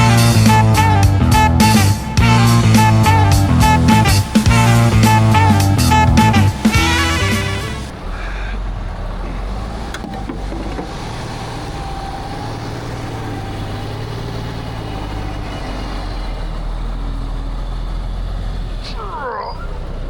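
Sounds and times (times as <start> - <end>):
music: 0.0 - 7.9
diesel engine droning: 0.0 - 20.0.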